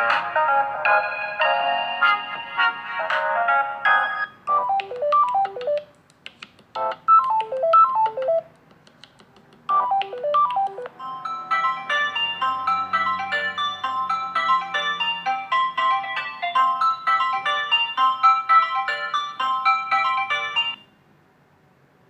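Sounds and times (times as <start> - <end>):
phone ringtones: 3.9 - 5.9, 6.8 - 8.5, 9.7 - 20.9.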